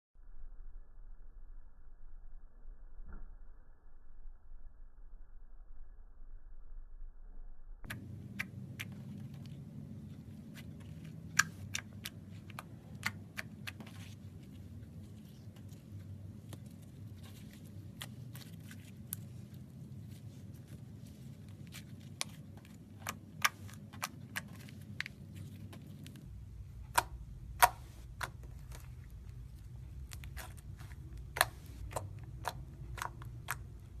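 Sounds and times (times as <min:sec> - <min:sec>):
faint steady hum: 0:04.0 - 0:34.0
slime clicking and popping: 0:26.8 - 0:34.0.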